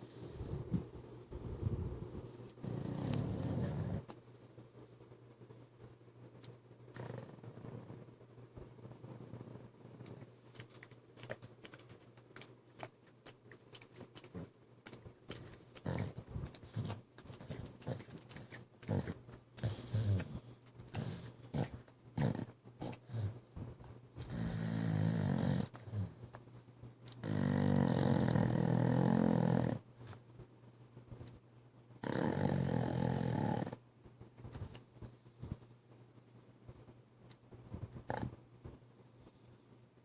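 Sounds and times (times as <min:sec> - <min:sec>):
dog snoring: 0:02.6 - 0:04.2, 0:06.9 - 0:08.1, 0:15.3 - 0:23.4, 0:24.2 - 0:26.2, 0:27.2 - 0:29.9, 0:32.0 - 0:33.8, 0:38.0 - 0:38.4.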